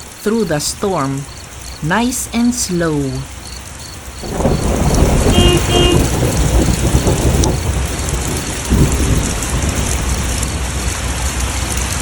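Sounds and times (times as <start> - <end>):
heavy rain pouring: 0.0 - 12.0
deep continuous rumble: 2.9 - 12.0.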